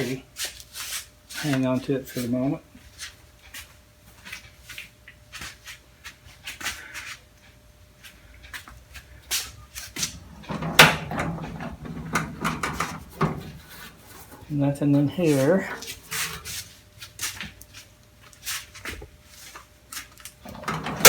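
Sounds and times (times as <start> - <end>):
tools clicking and knocking: 10.0 - 14.4, 20.4 - 21.0
drawer sliding on runners: 10.0 - 14.5, 20.4 - 21.0.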